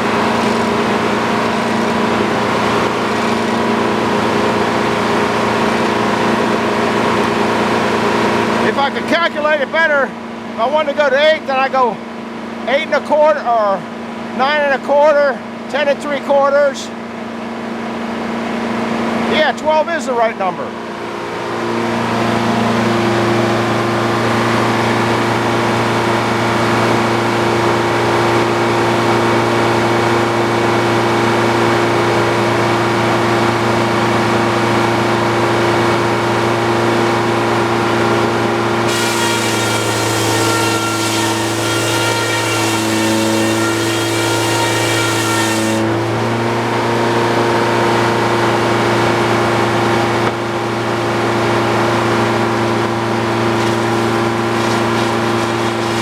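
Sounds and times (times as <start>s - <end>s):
saw blade whining through log: 0.0s - 8.9s, 36.5s - 46.9s, 50.2s - 56.0s
sawmill engine running: 0.0s - 56.0s.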